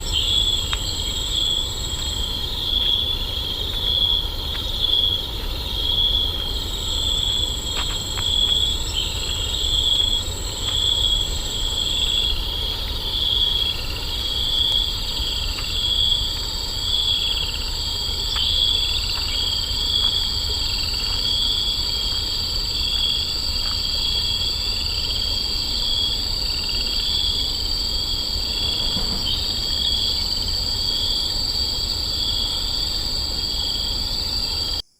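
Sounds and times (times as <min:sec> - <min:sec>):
high-pitched insect trill: 0:00.0 - 0:34.9
insect high chirp: 0:00.0 - 0:34.9
low rumble: 0:28.1 - 0:31.5.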